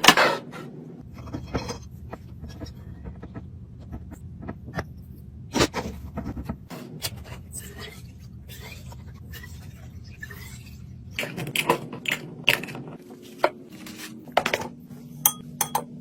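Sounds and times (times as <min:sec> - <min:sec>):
low steady hum: 0:00.5 - 0:16.0
dishes clinking and knocking: 0:15.3 - 0:16.0.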